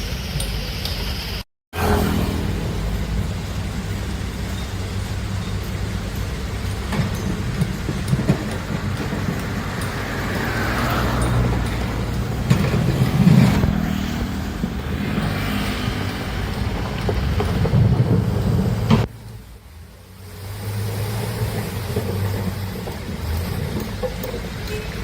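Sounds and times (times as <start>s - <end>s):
excavator diesel engine running: 1.8s - 19.2s
knocks and clanks: 2.4s - 19.1s.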